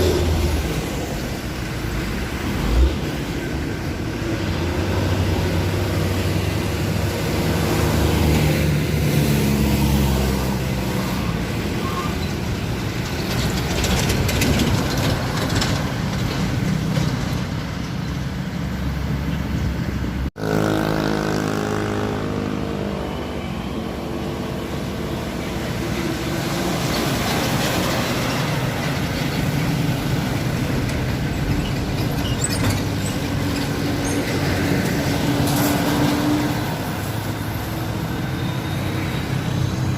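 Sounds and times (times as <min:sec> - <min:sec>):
truck engine under load: 0:00.0 - 0:20.6, 0:22.3 - 0:39.9
traffic noise: 0:00.0 - 0:39.9.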